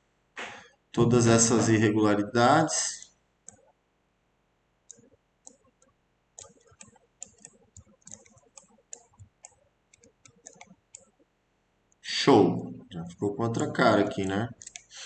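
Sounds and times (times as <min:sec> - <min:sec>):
computer mouse clicking: 0:03.0 - 0:03.8, 0:04.8 - 0:11.3, 0:13.6 - 0:15.0.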